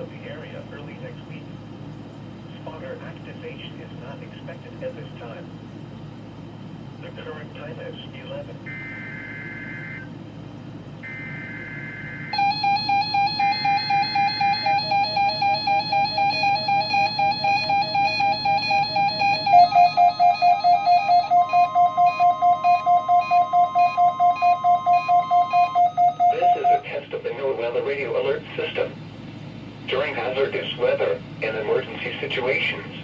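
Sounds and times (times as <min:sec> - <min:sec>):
pulsing electronic alert tone: 0:11.0 - 0:26.8
screeching digital data bursts: 0:11.1 - 0:26.8.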